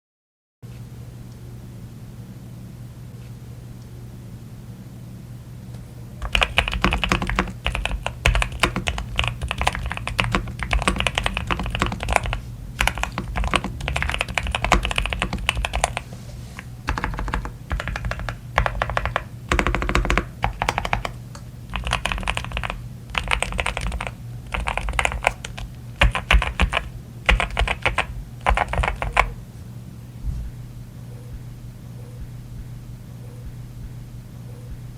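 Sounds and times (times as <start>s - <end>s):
steady low hum: 0.6s - 34.9s
mechanical keyboard typing: 6.2s - 29.4s.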